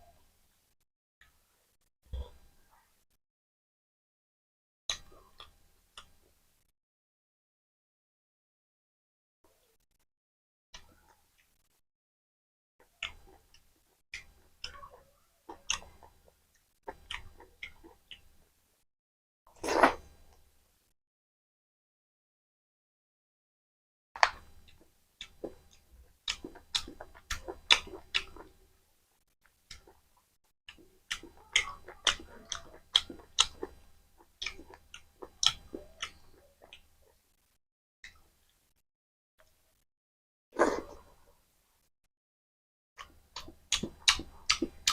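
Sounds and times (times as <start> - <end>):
person chewing food: 12.8 - 18.4, 24.2 - 28.6, 29.4 - 37.2, 43.0 - 44.9
wet mouth smacks and clicks: 30.7 - 33.8, 34.4 - 36.8, 43.0 - 44.9.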